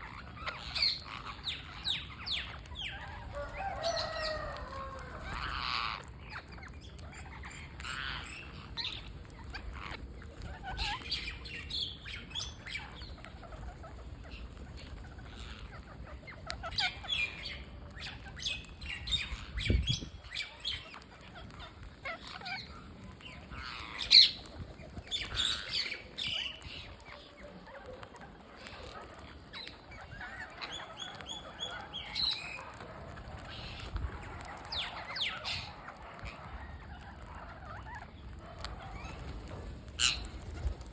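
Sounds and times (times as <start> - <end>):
parrots squawking: 0.0 - 40.8.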